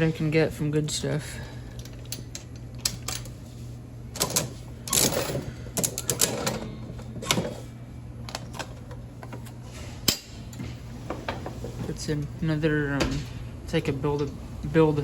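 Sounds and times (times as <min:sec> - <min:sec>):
steady low hum: 0:00.0 - 0:15.0
vending machine clicking and rattling: 0:04.1 - 0:07.6.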